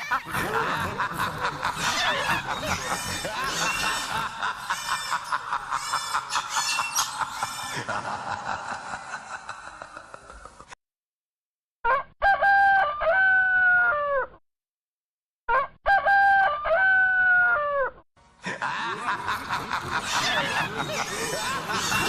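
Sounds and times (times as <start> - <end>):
rooster crowing: 12.2 - 14.0.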